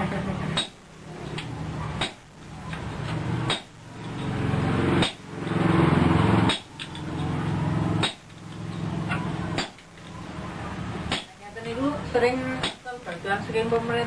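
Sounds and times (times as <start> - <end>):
hammer striking iron on anvil: 0.6 - 0.8, 3.5 - 3.8, 5.0 - 5.2, 6.5 - 6.8, 8.0 - 8.2, 11.1 - 11.3.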